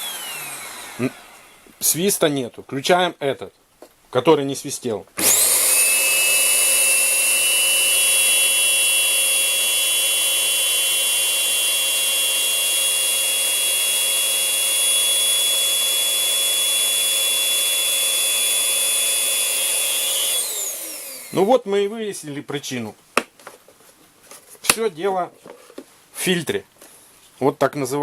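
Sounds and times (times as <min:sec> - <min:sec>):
vacuum cleaner motor whine: 0:00.0 - 0:01.7, 0:05.2 - 0:21.5.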